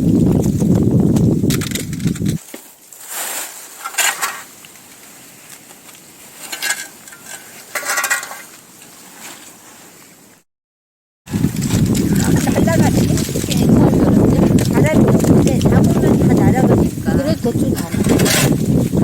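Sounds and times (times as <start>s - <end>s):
rustling clinking handling noise: 3.8s - 8.9s.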